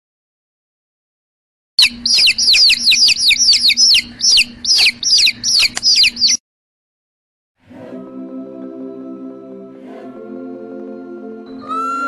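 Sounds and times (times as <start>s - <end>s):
baby chick peeping: 1.8s - 6.4s.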